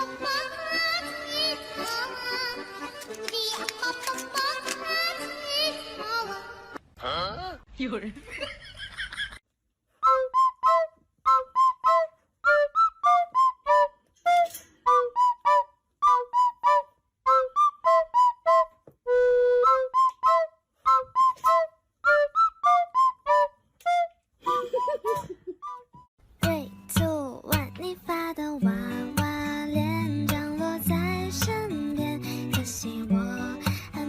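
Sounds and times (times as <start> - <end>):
whistle-like tune: 10.0 - 26.1.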